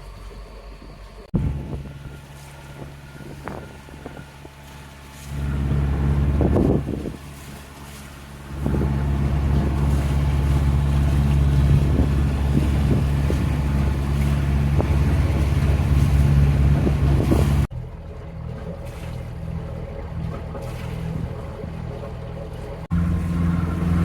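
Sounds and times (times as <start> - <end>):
boat engine humming: 0.0 - 24.0
wind noise on microphone: 0.8 - 17.7.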